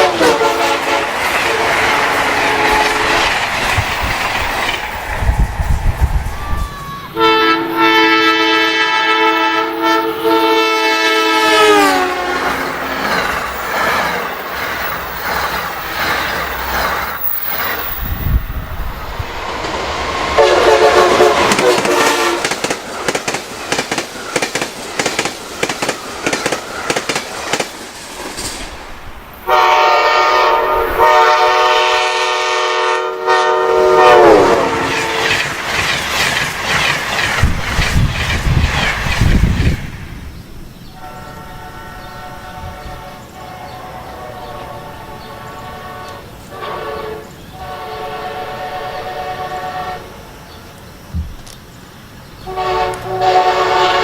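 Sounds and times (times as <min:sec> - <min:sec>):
train horn chord: 0:00.0 - 0:03.4, 0:07.2 - 0:12.7, 0:20.3 - 0:22.5, 0:29.5 - 0:35.4, 0:41.0 - 0:50.2, 0:52.4 - 0:54.0
train rattling on rails: 0:00.0 - 0:54.0.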